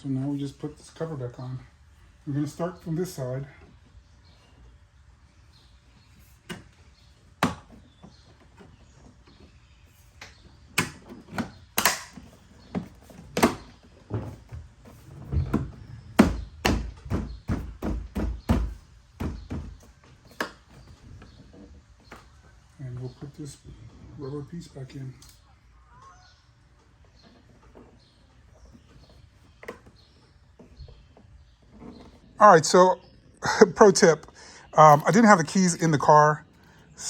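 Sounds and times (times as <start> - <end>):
plastic clips snapping: 10.2 - 12.3
heavy thumps: 12.8 - 21.1.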